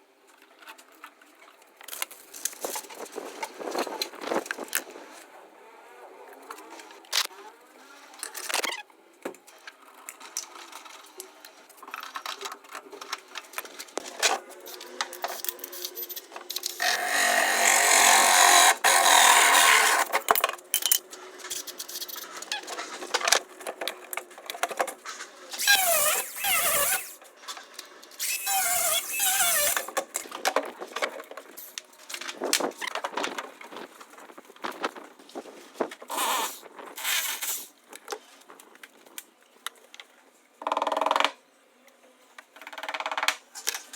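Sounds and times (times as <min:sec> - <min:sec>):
tool clicks and clatter: 0:11.9 - 0:25.0
power drill running: 0:16.8 - 0:20.1
short wavering squeals: 0:25.6 - 0:27.2.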